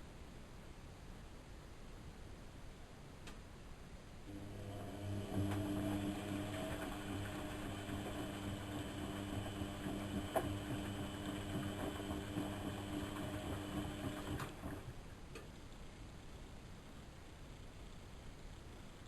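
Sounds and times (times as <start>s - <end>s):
washing machine motor hum: 4.3s - 15.2s.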